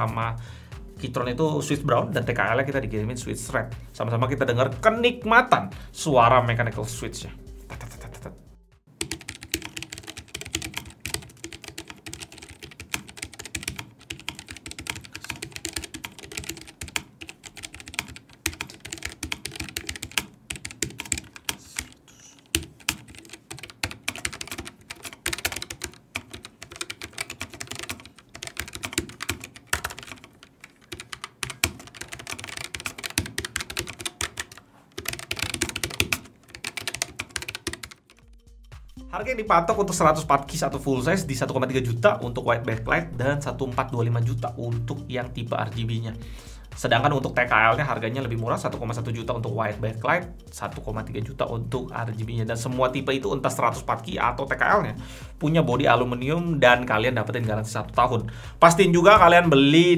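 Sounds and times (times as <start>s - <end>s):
fast typing on mechanical keyboard: 9.0s - 38.4s.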